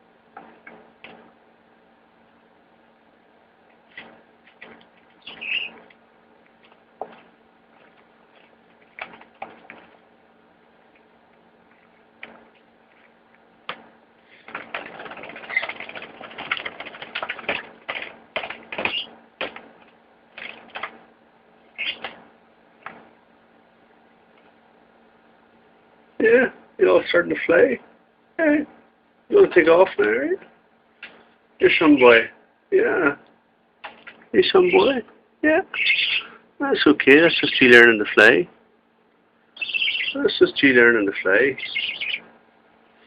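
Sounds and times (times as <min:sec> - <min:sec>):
budgie chirps: 0:05.2 - 0:05.8, 0:35.7 - 0:36.4, 0:39.6 - 0:40.2, 0:41.6 - 0:42.3
bird wings flapping: 0:06.6 - 0:10.0, 0:14.4 - 0:21.0.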